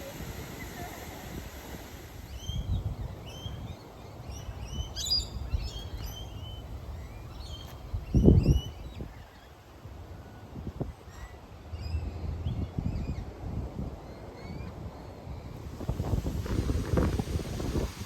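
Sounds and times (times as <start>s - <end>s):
small birds chirping: 2.2s - 9.7s.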